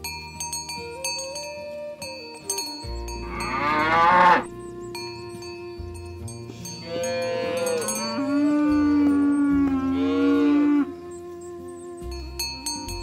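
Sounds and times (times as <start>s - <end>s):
background music: 0.0s - 13.0s
cow mooing: 3.2s - 4.5s, 6.8s - 11.0s.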